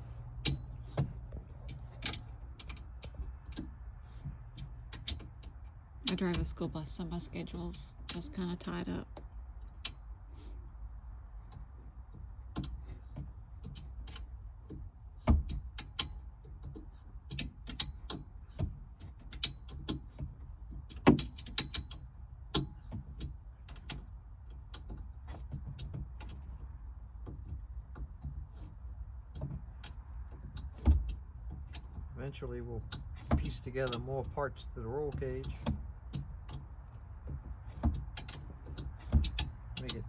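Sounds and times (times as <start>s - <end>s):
low steady hum: 0.0s - 40.0s
hand tools clicking and knocking: 29.3s - 40.0s.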